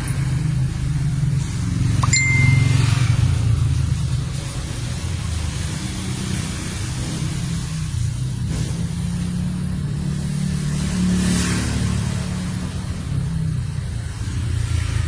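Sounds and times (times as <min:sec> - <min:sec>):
short high beep: 0:02.0 - 0:03.3.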